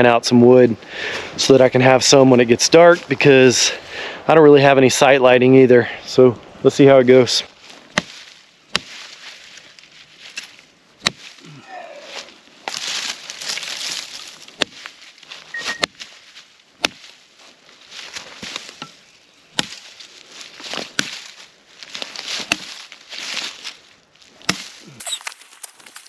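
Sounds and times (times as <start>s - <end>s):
footsteps through leaf litter: 7.5s - 18.8s, 19.8s - 26.0s
rustling brush: 7.5s - 19.2s, 25.0s - 26.0s
sticks snapping: 24.5s - 26.0s.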